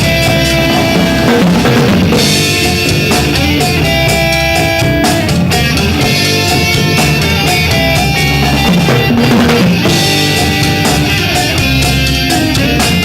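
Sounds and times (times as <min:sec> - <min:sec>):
drum kit steady beat: 0:00.0 - 0:13.0
guitar: 0:00.0 - 0:13.0
held chords: 0:00.0 - 0:13.0.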